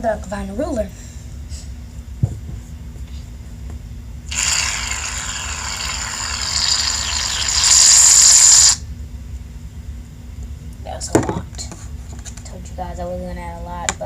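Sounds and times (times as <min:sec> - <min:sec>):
aerosol can spraying foam: 0:04.3 - 0:08.8.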